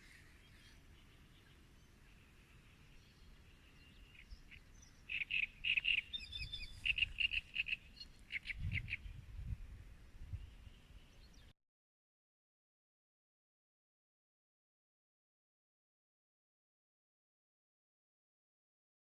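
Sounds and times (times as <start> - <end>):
songbird chirping: 0.0 - 11.6.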